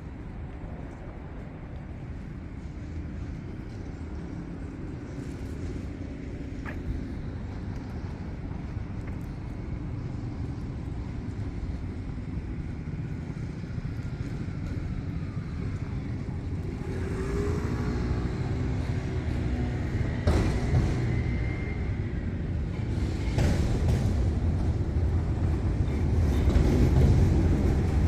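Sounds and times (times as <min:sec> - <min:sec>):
rumble of passing vehicles: 0:00.0 - 0:28.0
vehicle engine: 0:12.9 - 0:25.0.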